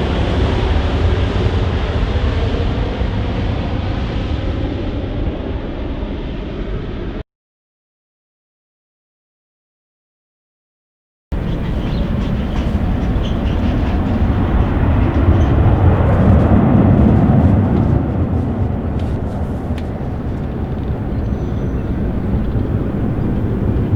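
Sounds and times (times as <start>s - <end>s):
jet engine roar passing: 11.4s - 23.9s.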